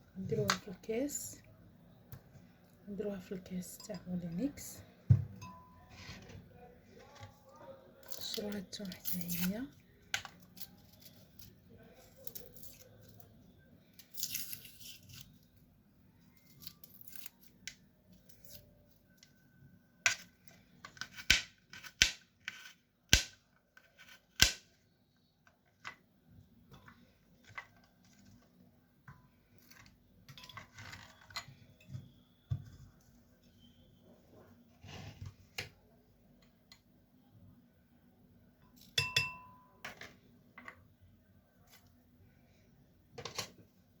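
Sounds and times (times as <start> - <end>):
garlic skins rustling and tearing: 8.0 - 15.7, 16.3 - 19.1.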